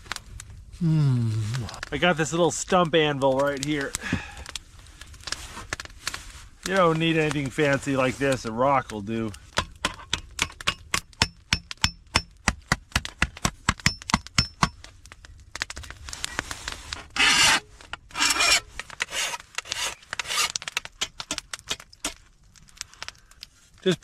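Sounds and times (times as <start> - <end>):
scraping on metal edge: 17.1 - 21.3.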